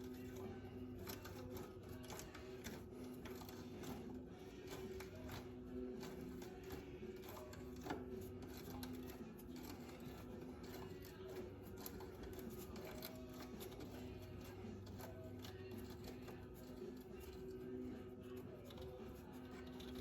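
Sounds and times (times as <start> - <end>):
clicks and light rattles: 0.0 - 20.0.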